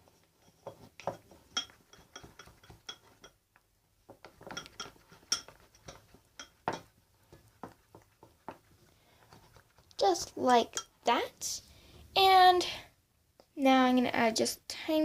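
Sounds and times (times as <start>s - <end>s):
utensil clinking against bowl: 0.7s - 3.4s, 4.3s - 6.9s.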